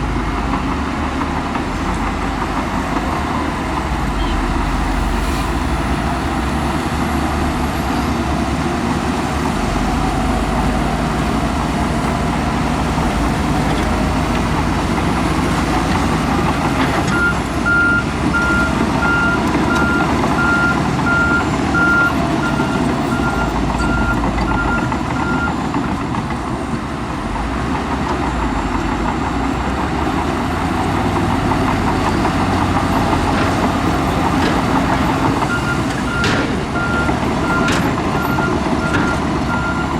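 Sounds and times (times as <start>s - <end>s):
heavy diesel machinery running: 0.0s - 39.9s
reversing alarm beeping: 17.1s - 25.6s, 33.2s - 39.9s.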